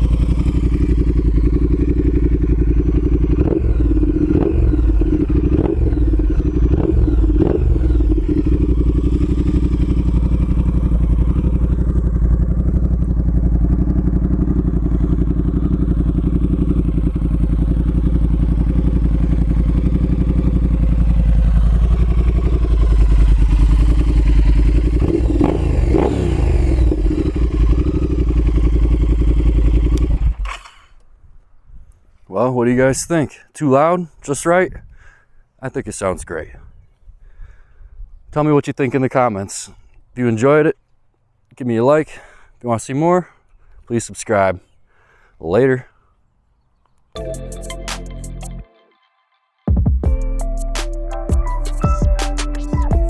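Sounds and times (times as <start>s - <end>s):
motorcycle engine idling and revving: 0.0s - 31.1s.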